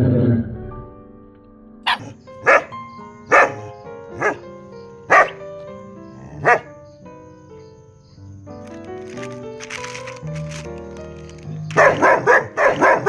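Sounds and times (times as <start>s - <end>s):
background music: 0.7s - 13.0s
dog barking: 1.8s - 4.5s, 5.1s - 5.4s, 6.1s - 6.8s, 11.7s - 13.0s.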